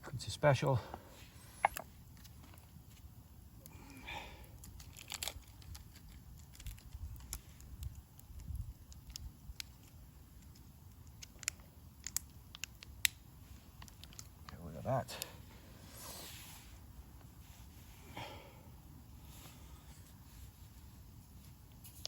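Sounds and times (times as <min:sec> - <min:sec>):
small clicks: 0:04.6 - 0:13.2
packaging crinkling: 0:04.7 - 0:07.9.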